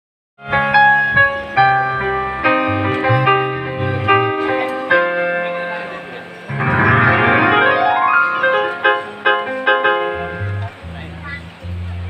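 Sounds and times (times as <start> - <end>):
electronic keyboard chords: 0.4 - 10.8
bass line: 10.2 - 11.6.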